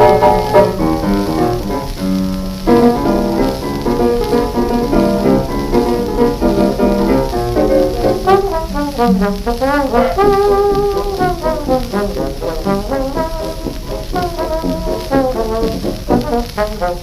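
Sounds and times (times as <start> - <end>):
piano music: 0.0 - 17.0.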